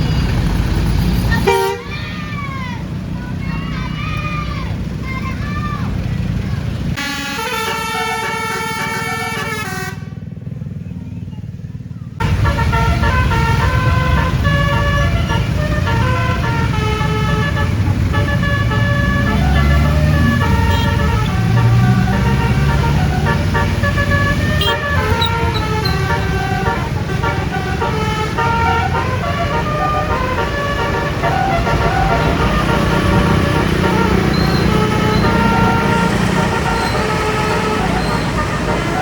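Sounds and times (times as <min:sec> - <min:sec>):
bus multi-tone horn melody: 0:01.3 - 0:01.9, 0:07.0 - 0:10.3, 0:12.2 - 0:39.0.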